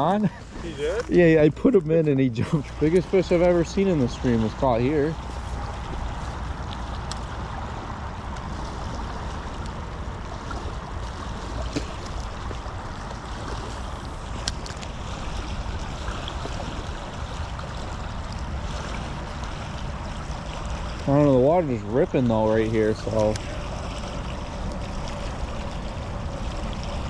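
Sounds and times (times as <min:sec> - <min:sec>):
water rushing over rocks: 0:02.6 - 0:27.0.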